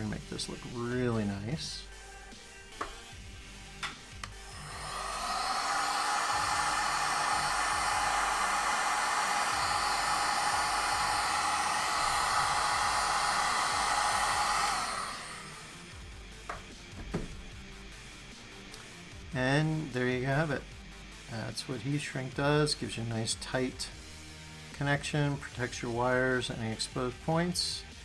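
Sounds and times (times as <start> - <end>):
heat gun blowing: 2.6 - 17.7.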